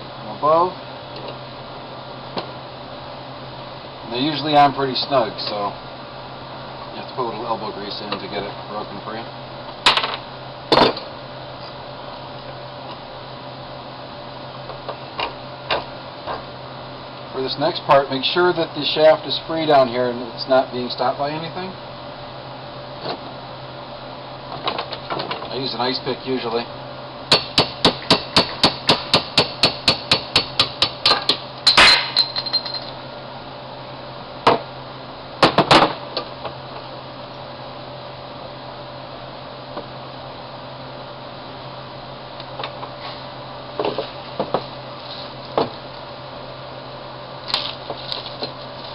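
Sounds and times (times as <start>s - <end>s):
steady low hum: 0.0s - 48.9s
sharp tool knock: 27.3s - 31.4s
ringing metal clink: 31.7s - 32.9s.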